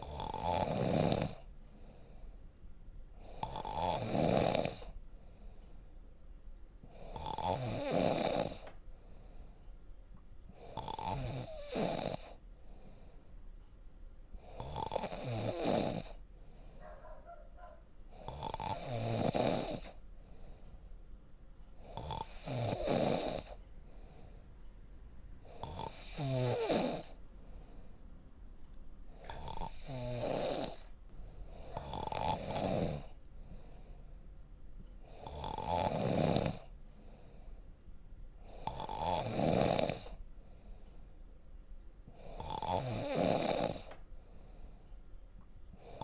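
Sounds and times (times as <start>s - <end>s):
person snoring: 0.0s - 1.5s, 3.2s - 5.0s, 6.9s - 8.7s, 10.6s - 12.4s, 14.4s - 16.2s, 18.1s - 20.0s, 21.8s - 23.6s, 25.5s - 27.2s, 29.1s - 30.9s, 31.5s - 33.8s, 35.1s - 36.7s, 38.5s - 40.2s, 42.2s - 44.0s.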